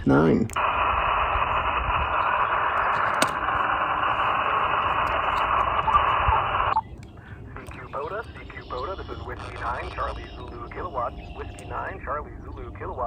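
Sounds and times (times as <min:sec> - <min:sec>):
radio static hiss: 0:00.1 - 0:06.8, 0:07.4 - 0:13.0.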